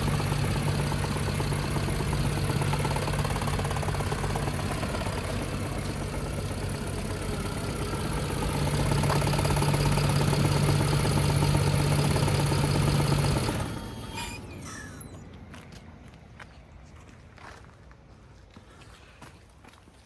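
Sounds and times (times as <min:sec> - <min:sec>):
car engine idling roughly: 0:00.0 - 0:15.2.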